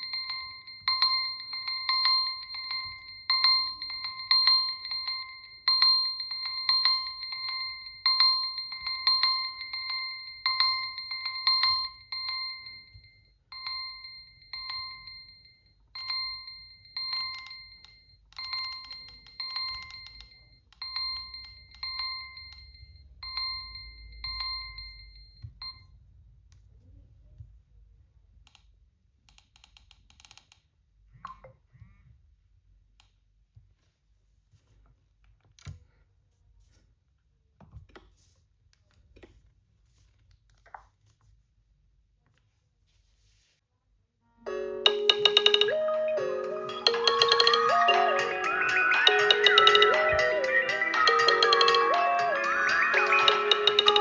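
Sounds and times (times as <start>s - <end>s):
phone alert beeps: 44.8s - 54.0s.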